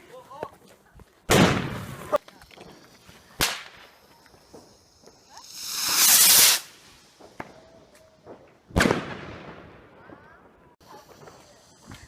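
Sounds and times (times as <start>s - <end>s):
faint firework pops: 1.3s - 12.0s
firework hissing: 1.4s - 9.3s, 10.8s - 12.0s.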